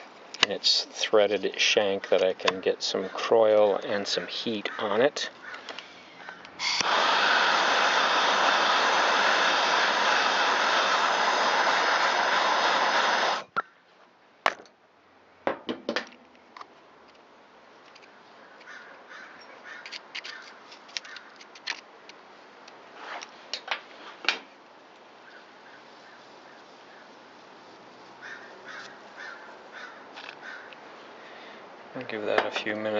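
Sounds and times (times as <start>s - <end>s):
aerosol can spraying hiss: 6.6s - 13.5s.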